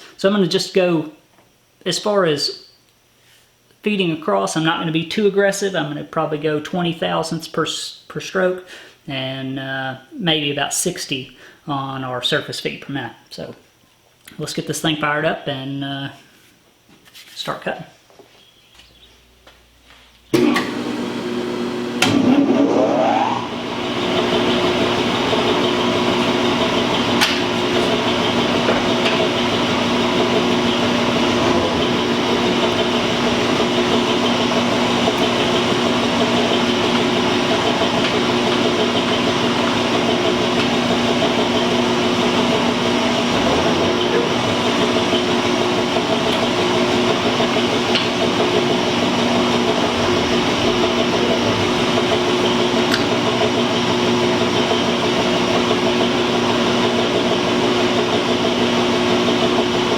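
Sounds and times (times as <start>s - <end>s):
metal shaper motor whine and clatter: 20.4s - 59.9s.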